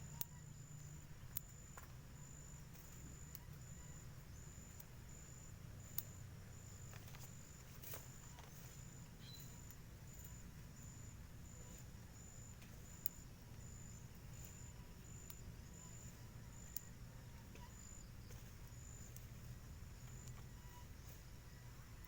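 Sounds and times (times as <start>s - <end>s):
insect chirping: 0.0s - 22.0s
sharp clicks: 15.2s - 15.5s.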